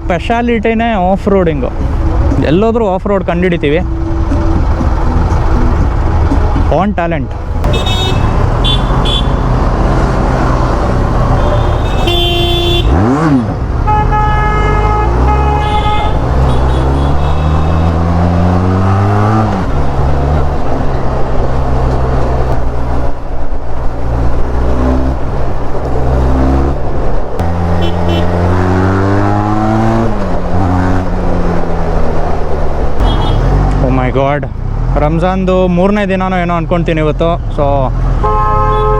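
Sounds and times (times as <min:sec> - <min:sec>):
vehicle horns honking: 0:07.6 - 0:09.6, 0:11.2 - 0:18.0, 0:27.4 - 0:28.6, 0:33.0 - 0:33.6, 0:38.2 - 0:38.9
motorcycle engine accelerating: 0:08.2 - 0:33.8.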